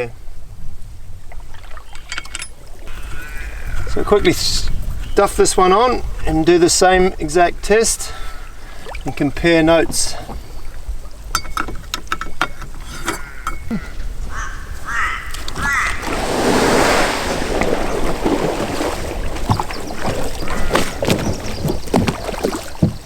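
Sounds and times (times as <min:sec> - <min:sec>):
water lapping: 0:00.9 - 0:23.0
metallic clicks and knocks: 0:02.0 - 0:02.6, 0:11.3 - 0:13.7
splashing water: 0:13.6 - 0:23.0.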